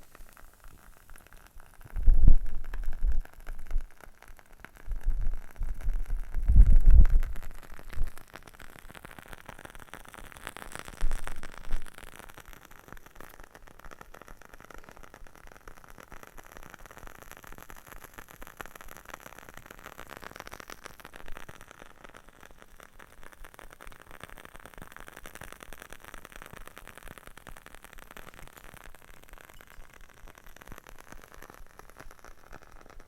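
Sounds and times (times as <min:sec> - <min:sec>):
candle wick crackling: 0:00.0 - 0:15.0.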